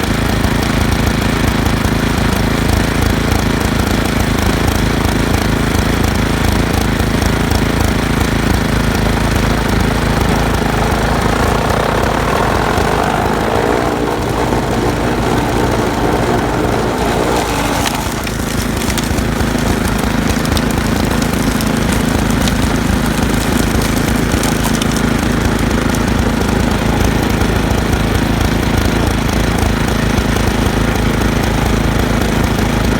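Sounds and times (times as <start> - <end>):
snowblower engine running: 0.0 - 32.9
rattling: 8.7 - 27.1.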